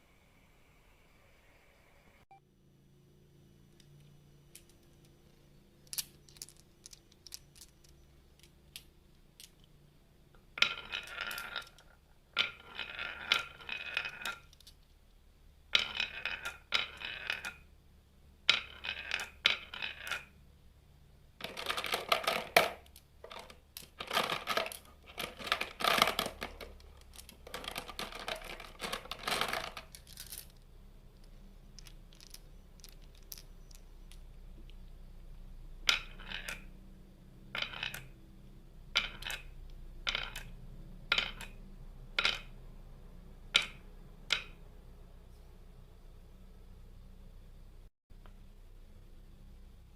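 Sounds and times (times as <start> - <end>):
marbles rolling down wooden run: 10.6 - 14.8, 15.7 - 17.6, 18.5 - 20.4, 21.4 - 30.6, 31.8 - 34.2, 35.9 - 36.7.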